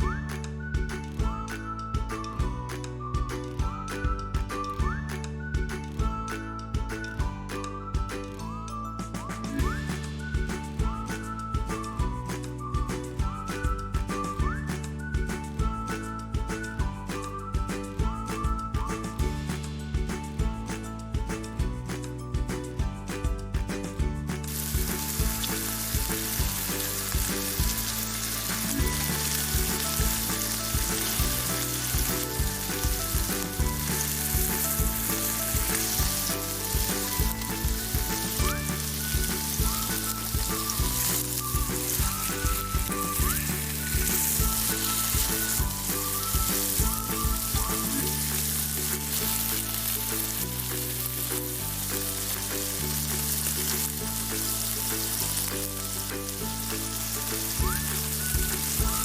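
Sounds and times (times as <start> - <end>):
background music with bass: 0.0 - 59.0
food sizzling in a pan: 24.5 - 59.0.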